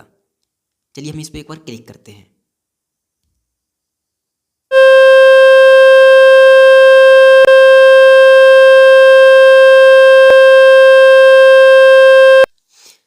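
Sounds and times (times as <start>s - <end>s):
loud buzzy speaker tone: 4.7s - 12.5s.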